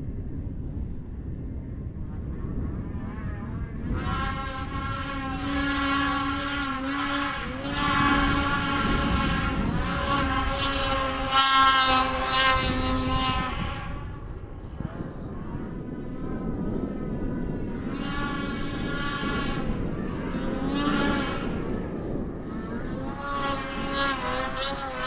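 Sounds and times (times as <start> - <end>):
snowmobile engine passing by: 2.9 - 15.5, 17.9 - 25.0.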